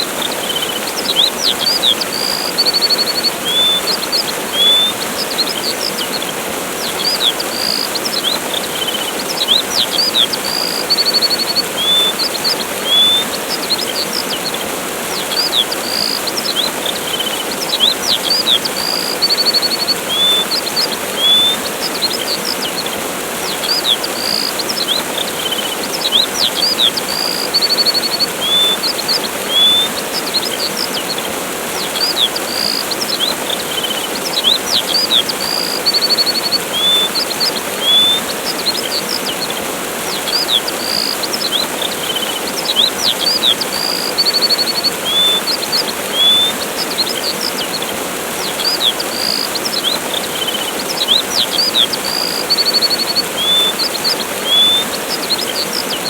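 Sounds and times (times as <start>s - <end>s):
small birds chirping: 0.0s - 56.0s
waterfall rushing: 0.0s - 56.0s.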